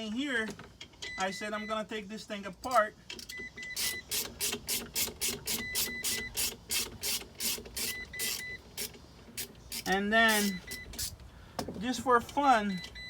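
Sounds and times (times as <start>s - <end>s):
ratchet wrench clicking: 3.2s - 11.2s.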